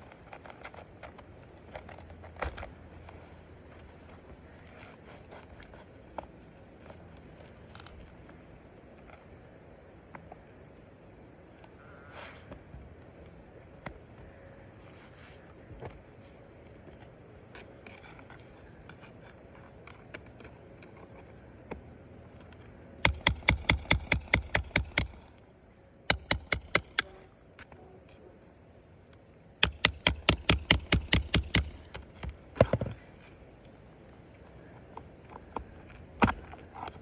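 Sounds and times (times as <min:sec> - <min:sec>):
hammer blows on metal: 0:26.1 - 0:27.2, 0:29.6 - 0:31.9.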